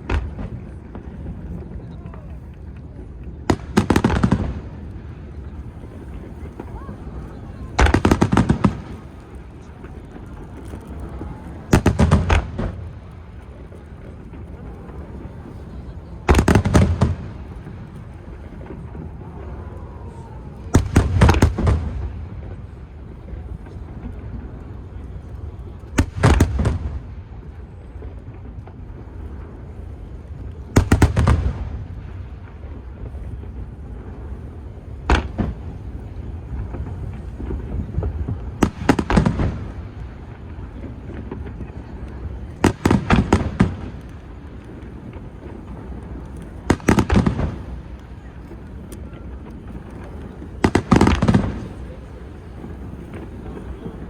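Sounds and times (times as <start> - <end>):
fireworks bursting: 0.0 - 54.0.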